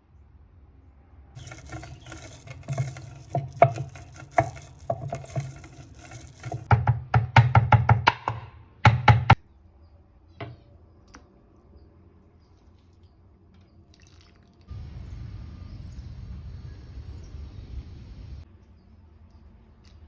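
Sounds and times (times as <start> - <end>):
knife chopping on wooden board: 2.2 - 9.4.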